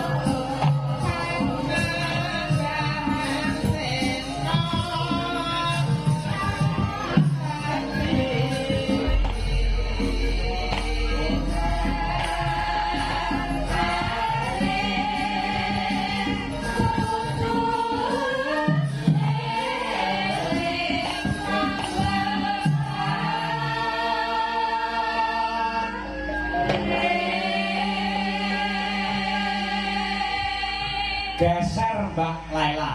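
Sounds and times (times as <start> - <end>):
drum strokes: 0.0 - 24.3.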